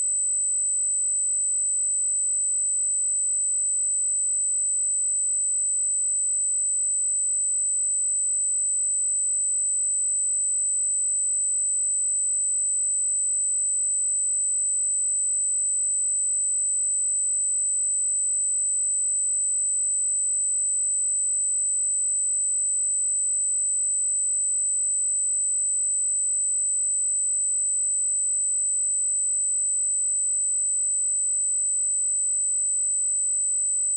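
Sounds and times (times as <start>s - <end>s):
high-pitched sine test tone: 13.5s - 33.9s.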